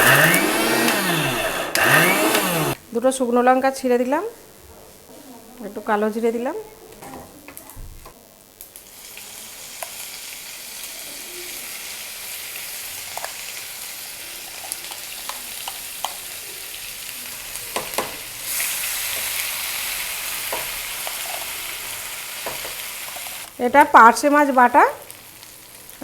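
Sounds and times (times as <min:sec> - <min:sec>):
spices sizzling in hot oil: 0:08.4 - 0:26.0.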